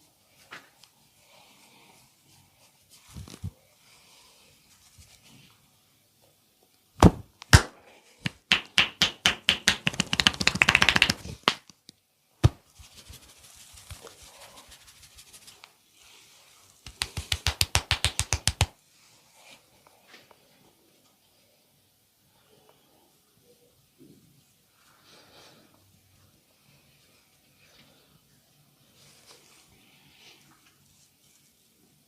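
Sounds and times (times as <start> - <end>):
hands striking in massage: 7.0 - 11.7, 16.8 - 18.8.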